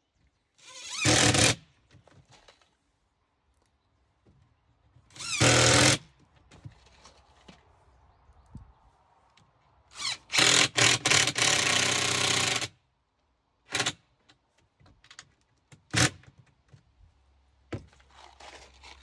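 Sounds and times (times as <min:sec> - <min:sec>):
power drill into plywood: 0:00.6 - 0:01.6, 0:05.1 - 0:06.1, 0:10.0 - 0:12.7, 0:13.7 - 0:14.0, 0:15.9 - 0:16.2.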